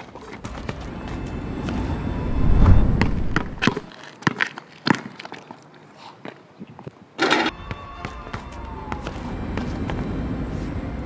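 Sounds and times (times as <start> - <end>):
loud low rumble: 0.9 - 3.9.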